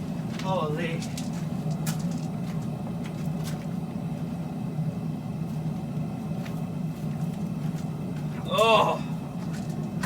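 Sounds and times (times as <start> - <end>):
forge roaring: 7.5 - 10.0.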